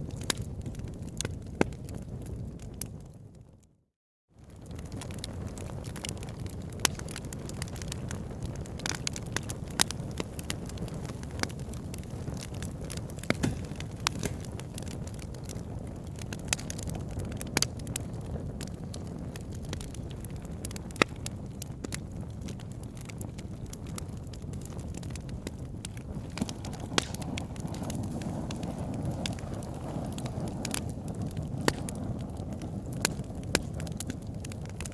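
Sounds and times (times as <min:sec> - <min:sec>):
burning wood crackling and popping: 0:00.0 - 0:03.4, 0:04.4 - 0:34.9
low rush of flames: 0:04.4 - 0:34.9.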